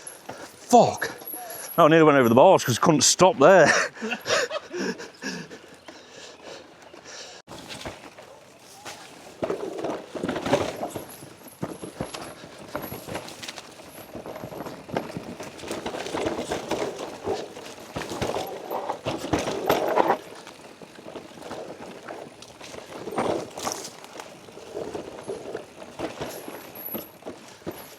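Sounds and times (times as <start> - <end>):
bike knocking and rattling: 0.0 - 2.4, 3.7 - 27.9
bike tyres rumbling over rock: 7.5 - 27.9.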